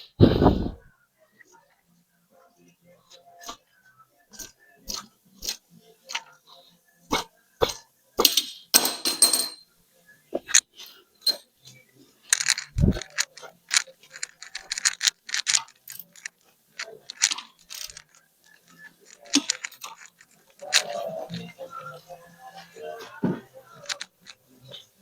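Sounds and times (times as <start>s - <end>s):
metal parts clinking and clanking: 8.3s - 9.6s, 11.2s - 11.4s, 12.3s - 21.1s, 23.8s - 24.4s.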